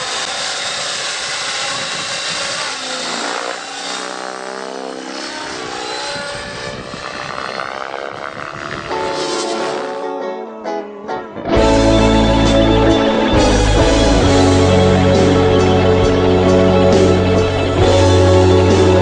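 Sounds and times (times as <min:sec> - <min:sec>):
model helicopter rotor whine: 0:00.0 - 0:10.2.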